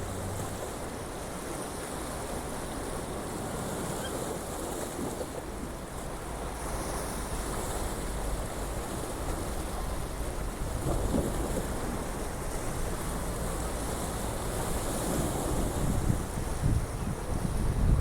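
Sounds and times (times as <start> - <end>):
sea waves washing: 0.0 - 18.0
wind buffeting microphone: 7.4 - 18.0.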